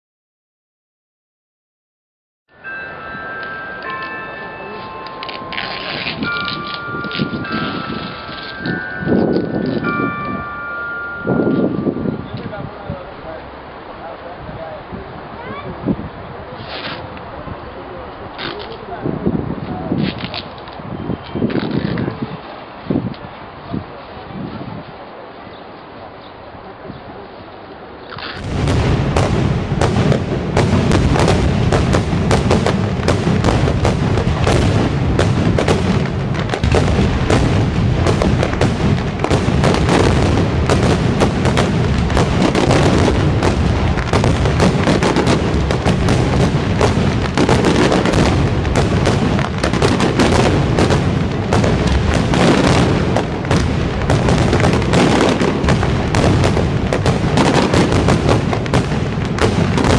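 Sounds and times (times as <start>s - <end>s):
fireworks cracking and booming: 5.2s - 10.6s, 28.2s - 59.9s.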